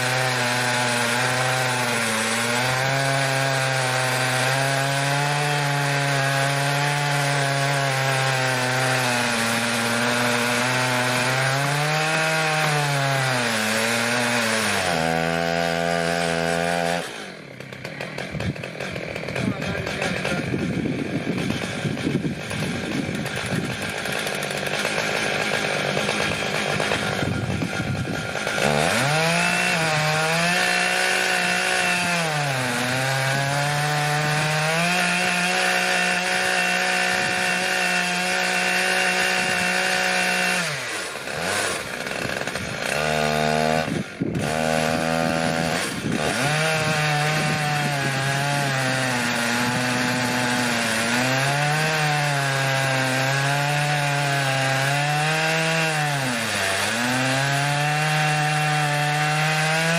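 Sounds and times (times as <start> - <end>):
chainsaw ripping a log: 0.0 - 59.9.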